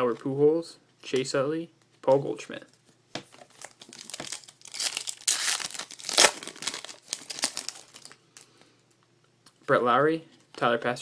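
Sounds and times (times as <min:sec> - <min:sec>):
foil wrapper tearing and crinkling: 0:03.5 - 0:08.2.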